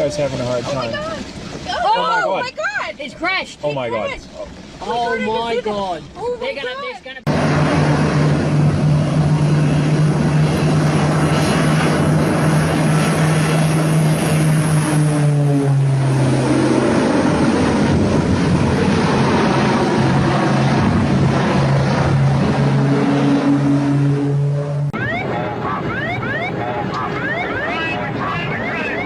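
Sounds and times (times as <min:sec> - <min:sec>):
propeller aircraft engine drone: 0:07.3 - 0:29.0.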